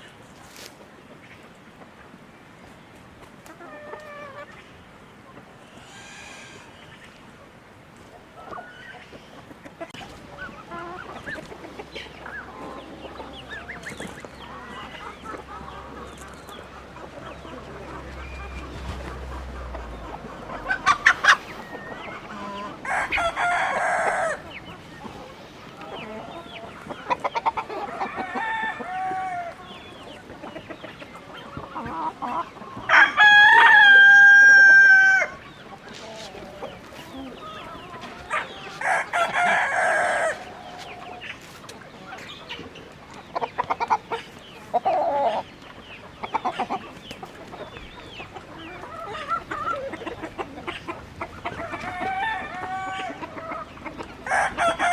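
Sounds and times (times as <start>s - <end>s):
chickens clucking: 0.0s - 54.9s
rooster crowing: 20.9s - 24.4s, 27.9s - 29.6s, 32.9s - 35.4s, 38.6s - 40.7s, 51.5s - 53.2s, 54.3s - 54.9s.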